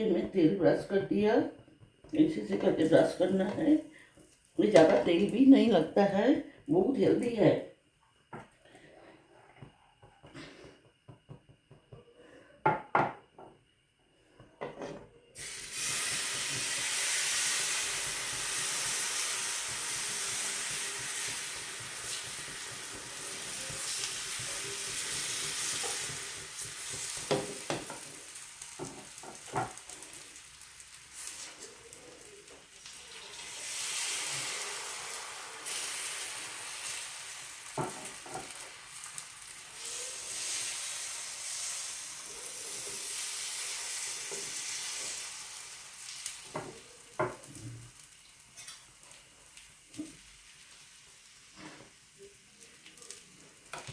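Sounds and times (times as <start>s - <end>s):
batter sizzling in hot oil: 15.4s - 53.9s.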